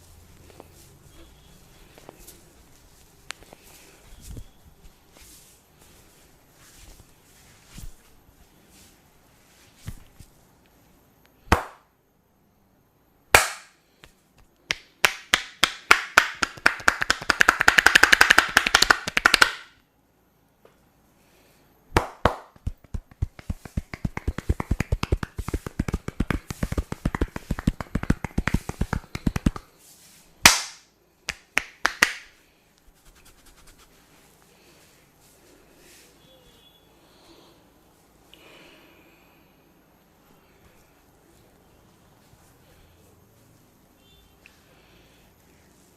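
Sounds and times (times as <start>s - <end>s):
sharp claps: 13.4s - 13.8s, 14.7s - 19.8s, 21.9s - 29.7s, 30.4s - 32.3s
hands slapping and tapping: 13.4s - 19.7s, 21.9s - 29.7s, 30.4s - 32.3s.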